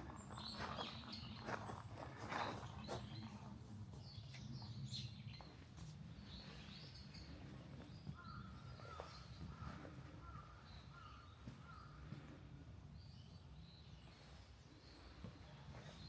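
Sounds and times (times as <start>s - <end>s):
birds chirping: 0.0s - 16.0s.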